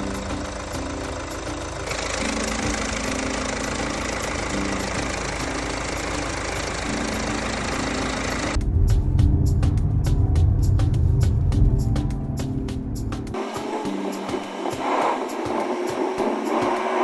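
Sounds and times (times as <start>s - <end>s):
engine humming: 0.0s - 17.0s
compressed air jet hissing: 13.4s - 17.0s.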